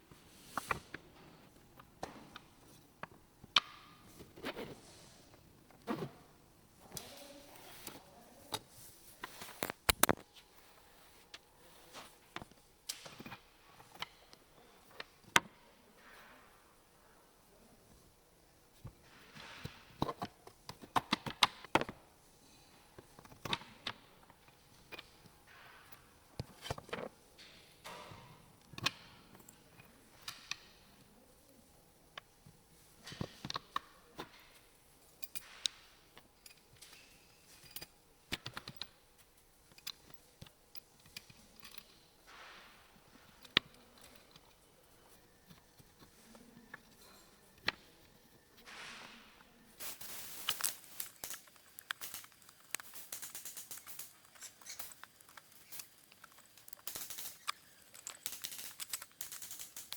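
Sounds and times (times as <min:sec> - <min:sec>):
rustling crinkling noise: 0:00.0 - 0:13.9, 0:39.1 - 0:59.9.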